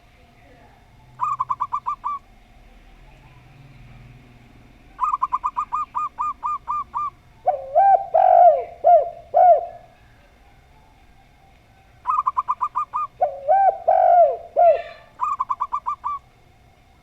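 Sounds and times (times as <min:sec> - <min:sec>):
lower arching dove coos: 0:01.0 - 0:02.4, 0:04.8 - 0:16.7
short high dove cooing: 0:05.0 - 0:10.0, 0:12.1 - 0:16.2.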